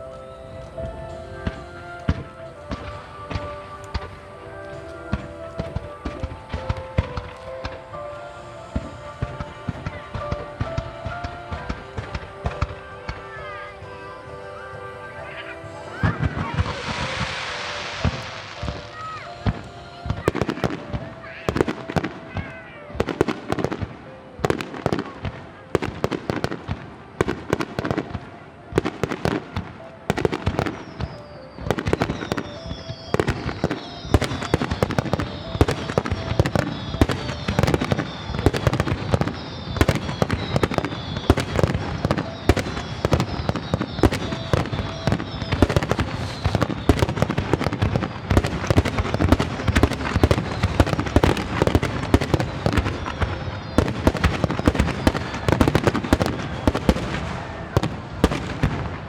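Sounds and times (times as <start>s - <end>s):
firework bursts and crackling: 0.0s - 59.0s
falling firework whistles: 15.4s - 23.8s, 28.8s - 58.9s.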